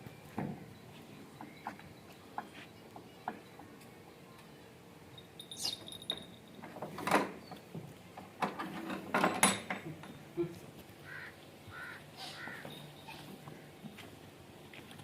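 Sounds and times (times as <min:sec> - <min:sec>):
bird calling: 0:11.0 - 0:13.7.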